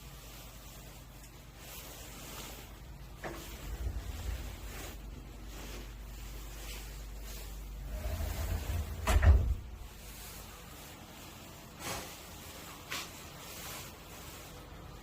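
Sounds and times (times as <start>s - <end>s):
sliding door rumbling on track: 3.2s - 5.0s, 7.8s - 10.0s
door shutting with heavy thud: 8.0s - 9.8s.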